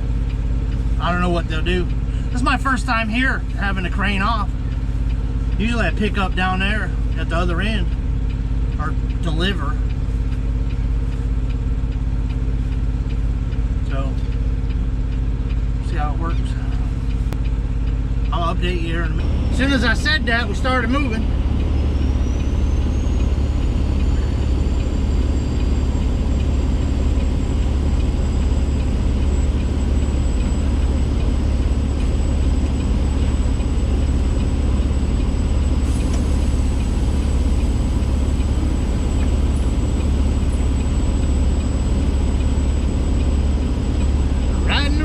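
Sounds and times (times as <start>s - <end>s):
truck diesel engine hum: 0.0s - 45.0s
faint high whine: 22.2s - 45.0s.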